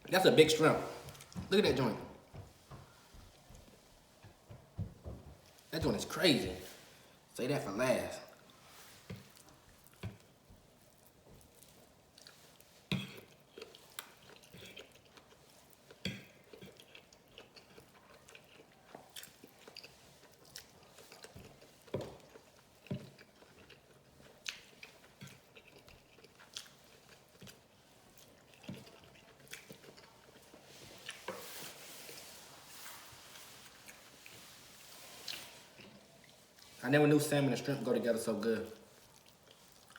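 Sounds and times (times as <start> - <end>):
chewing and biting food: 9.2 - 31.3, 38.8 - 39.9.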